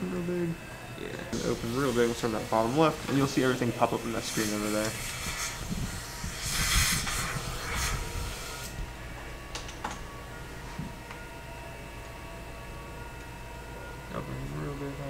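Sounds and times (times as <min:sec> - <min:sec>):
dental equipment hissing: 0:01.1 - 0:08.8.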